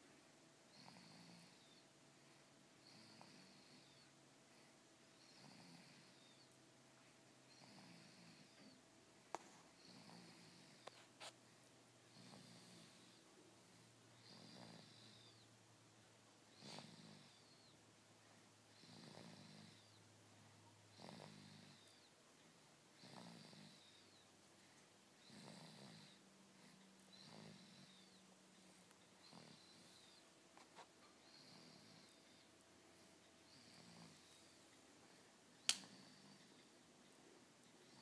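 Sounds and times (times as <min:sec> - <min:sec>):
faint whistling snoring: 0:00.7 - 0:01.9, 0:02.8 - 0:04.2, 0:05.1 - 0:06.6, 0:07.5 - 0:08.8, 0:09.8 - 0:11.0, 0:12.1 - 0:13.2, 0:14.1 - 0:15.6, 0:16.5 - 0:17.8, 0:18.7 - 0:20.1, 0:20.9 - 0:22.2, 0:23.0 - 0:24.3, 0:25.2 - 0:30.3, 0:31.2 - 0:32.5, 0:33.4 - 0:34.6.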